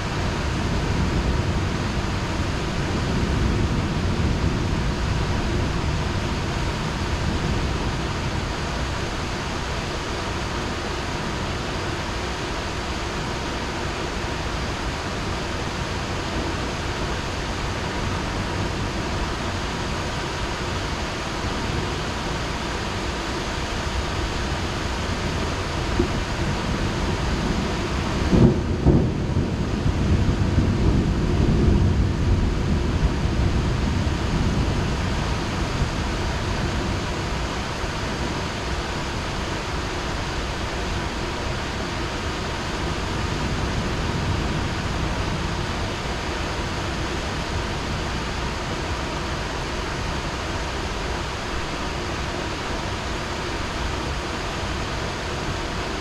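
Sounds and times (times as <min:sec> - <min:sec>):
heavy rain falling: 0:00.0 - 0:56.0
thunderclap and rumble: 0:00.0 - 0:56.0.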